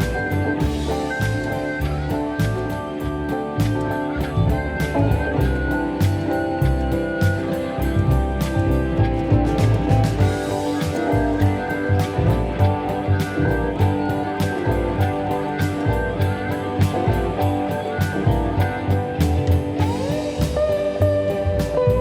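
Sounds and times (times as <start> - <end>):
instrumental guitar music with drums: 0.0 - 22.0
slide guitar notes: 0.0 - 22.0.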